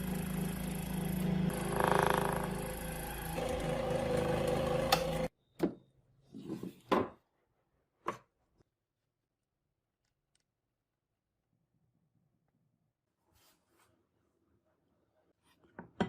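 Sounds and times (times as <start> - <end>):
machine running: 0.0 - 5.3.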